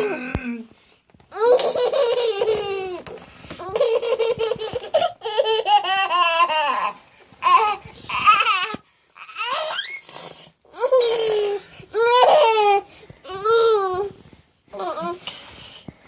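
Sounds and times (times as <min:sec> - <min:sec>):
baby laughing and squealing: 0:01.4 - 0:12.8.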